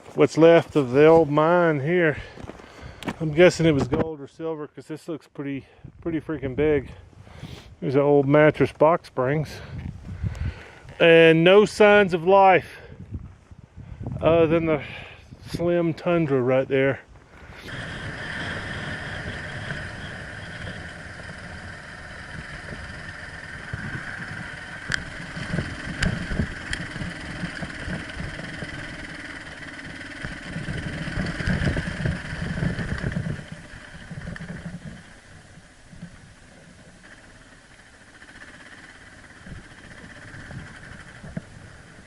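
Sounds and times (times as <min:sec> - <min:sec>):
motorcycle engine running: 0:00.0 - 0:04.1, 0:14.2 - 0:42.0
sharp clicks: 0:23.2 - 0:29.4.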